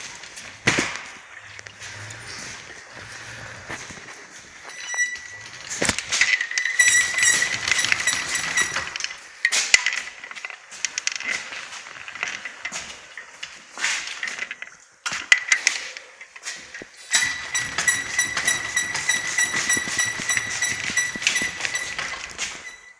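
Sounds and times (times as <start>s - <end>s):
knocks and rattles: 0.0s - 13.2s, 16.5s - 22.9s
moped engine squeaking whine: 1.4s - 9.4s, 17.1s - 22.9s.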